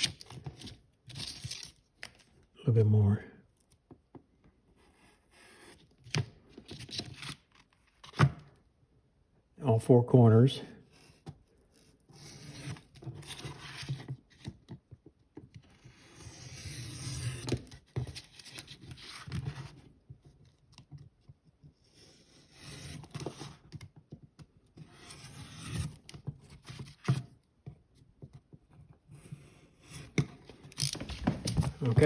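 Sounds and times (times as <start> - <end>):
wallpaper rustling and scraping: 30.4 - 32.0.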